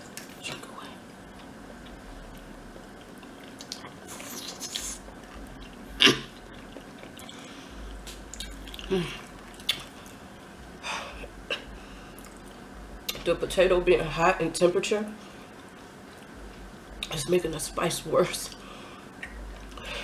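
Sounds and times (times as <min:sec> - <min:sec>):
chewing: 0:01.3 - 0:10.2, 0:12.1 - 0:13.2.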